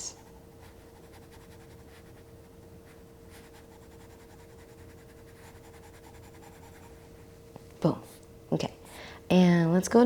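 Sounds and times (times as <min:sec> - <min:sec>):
low steady hum: 0:00.0 - 0:10.0
stylus scratching on tablet screen: 0:00.2 - 0:02.3, 0:02.9 - 0:07.0.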